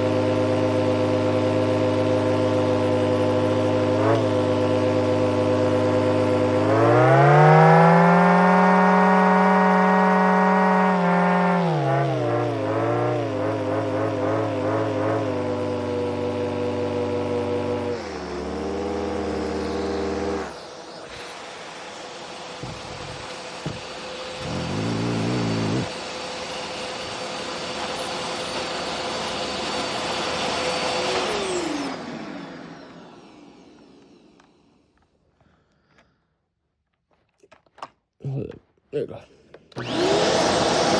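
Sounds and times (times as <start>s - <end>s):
turbine engine humming: 9.4s - 34.8s.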